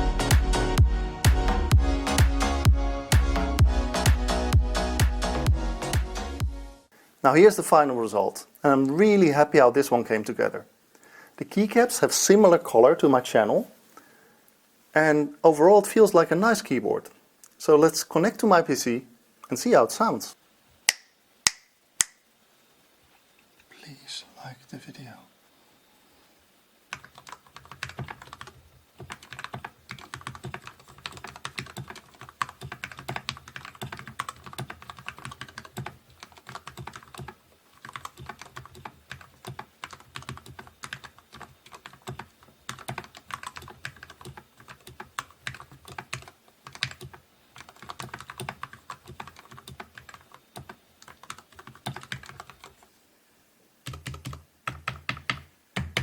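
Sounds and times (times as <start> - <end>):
mechanical keyboard typing: 26.9 - 52.8, 53.9 - 56.0.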